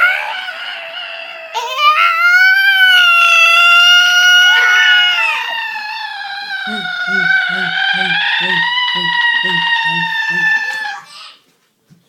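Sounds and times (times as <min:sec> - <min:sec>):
girl high-pitched vocal whine: 0:04.4 - 0:11.4.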